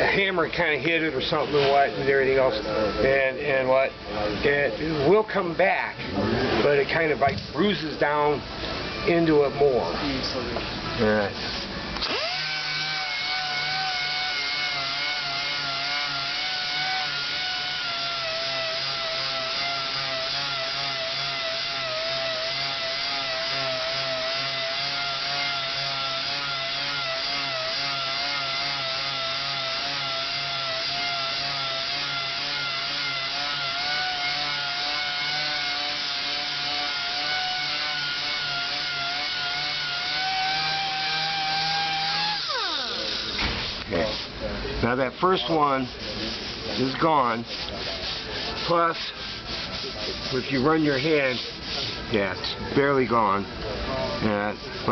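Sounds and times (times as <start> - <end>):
orbital sander whining: 12.0 - 43.9.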